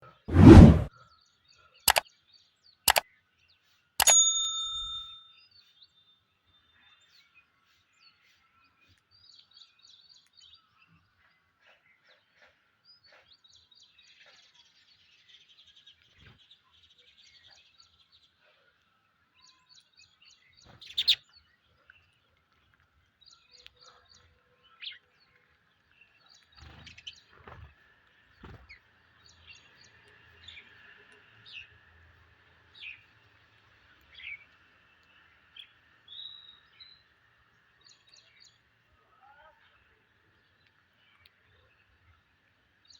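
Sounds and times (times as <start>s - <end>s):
short ringing tone: 4.0s - 5.2s.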